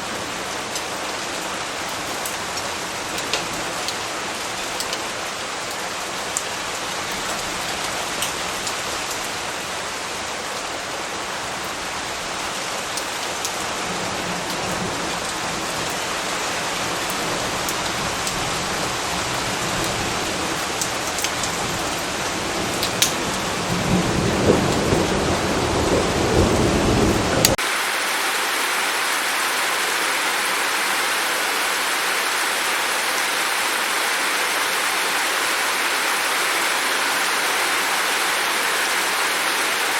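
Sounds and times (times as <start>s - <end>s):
steady rain: 0.0s - 39.9s
low rumble of thunder: 22.6s - 27.6s
rush of running water: 27.4s - 39.9s.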